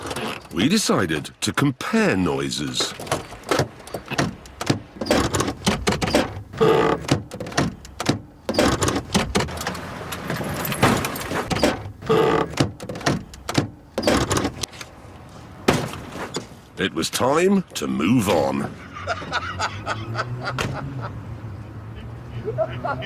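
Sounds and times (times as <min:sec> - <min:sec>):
old cars rattling and clanking: 0:00.0 - 0:01.3, 0:02.6 - 0:14.7.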